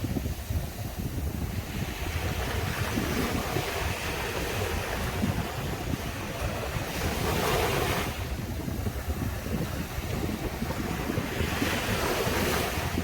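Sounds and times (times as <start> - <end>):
surf washing up a beach: 0.0 - 13.0.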